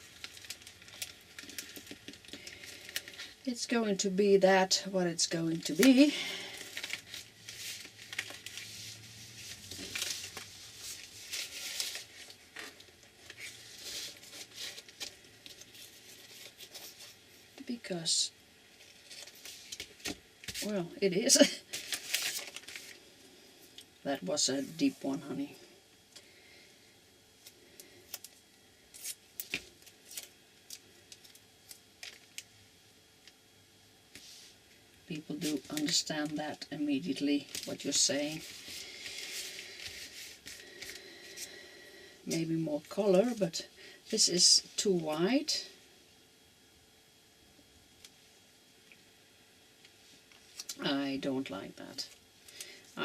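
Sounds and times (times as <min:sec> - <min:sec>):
paper crinkling and rustling: 0:00.0 - 0:03.4, 0:05.6 - 0:17.2, 0:18.8 - 0:20.7, 0:21.6 - 0:23.0, 0:27.4 - 0:32.4, 0:37.1 - 0:41.5.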